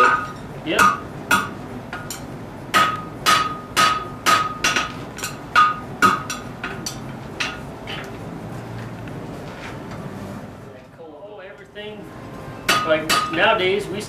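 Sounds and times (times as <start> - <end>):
hammer striking steel on anvil: 0.0 - 8.1, 12.7 - 13.6.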